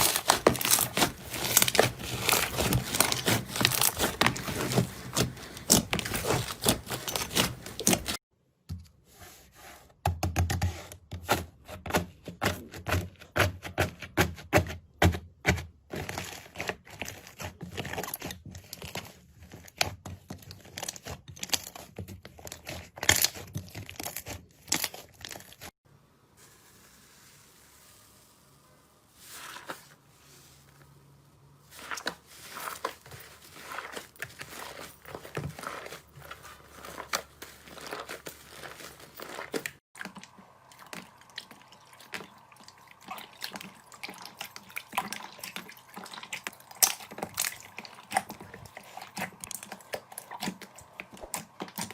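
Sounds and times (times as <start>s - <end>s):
slime crackling and popping: 0.0s - 8.2s.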